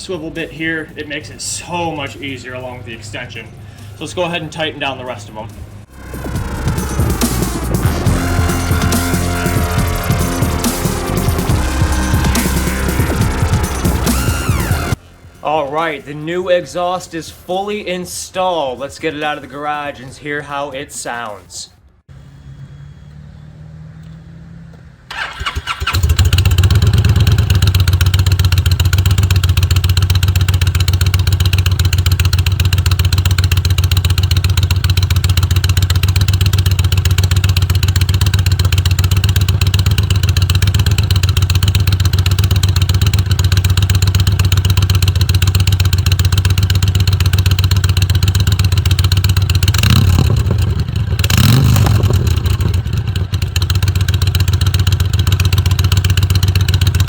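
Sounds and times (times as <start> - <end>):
motorcycle engine idling: 5.9 - 15.0, 25.1 - 57.0.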